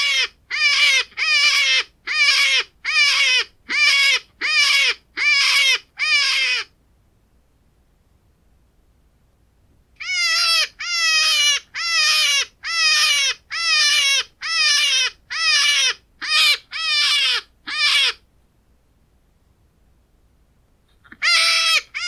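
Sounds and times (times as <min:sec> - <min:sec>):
hare distress squeals: 0:21.1 - 0:22.0.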